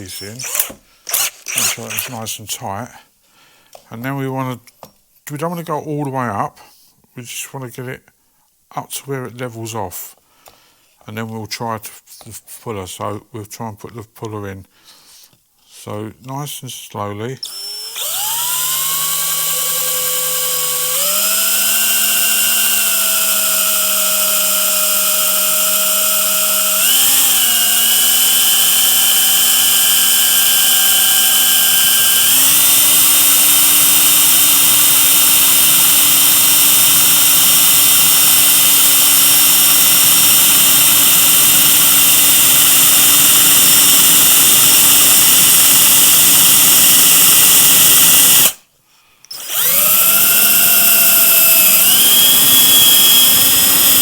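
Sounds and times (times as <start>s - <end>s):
electric drill grinding: 0.0s - 2.2s, 17.4s - 48.6s, 49.3s - 54.0s.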